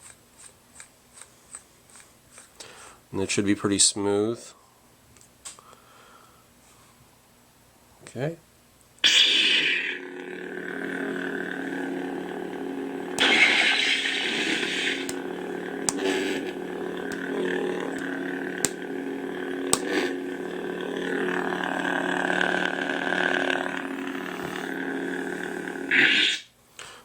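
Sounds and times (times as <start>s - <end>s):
lightsaber electric hum: 9.0s - 26.5s
lightsaber swing sweeps: 13.2s - 20.2s.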